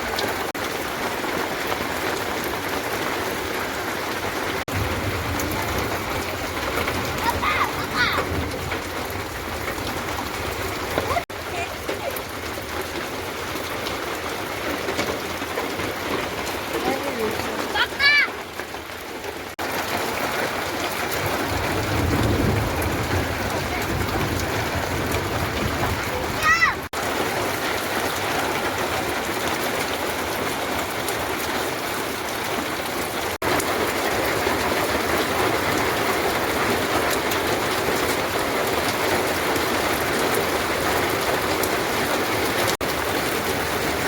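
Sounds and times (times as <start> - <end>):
rain falling steadily: 0.0 - 44.0.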